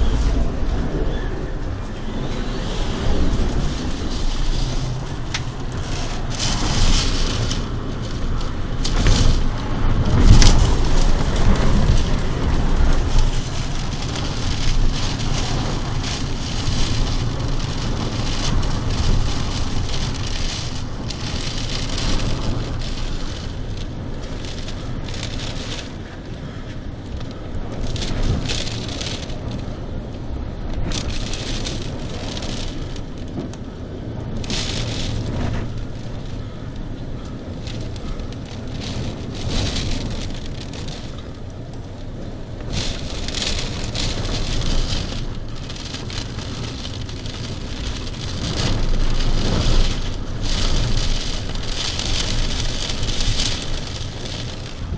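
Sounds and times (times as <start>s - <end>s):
rain hissing: 0.0s - 54.9s
storm wind rumbling on microphone: 0.0s - 54.9s.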